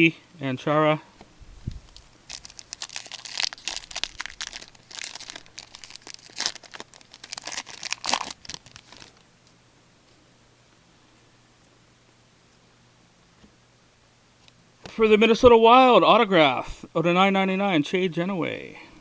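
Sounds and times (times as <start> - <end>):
wrapper crinkling: 1.7 - 9.2
cards rustling: 1.8 - 9.2.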